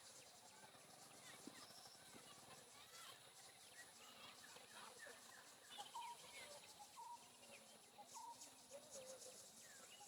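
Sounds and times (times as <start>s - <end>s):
faint bird chirps and whistles: 5.2s - 10.0s.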